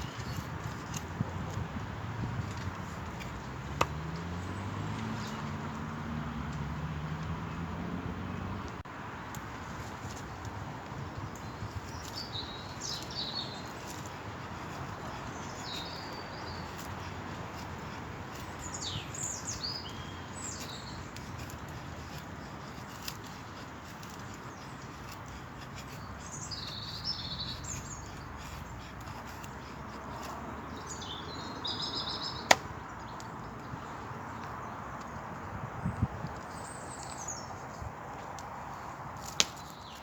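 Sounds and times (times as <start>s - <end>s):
small birds chirping: 9.8s - 40.0s.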